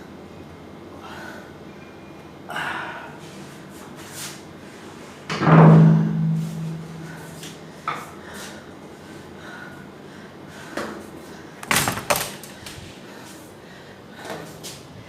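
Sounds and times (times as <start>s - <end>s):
heavy thud with low ring: 5.4s - 7.2s.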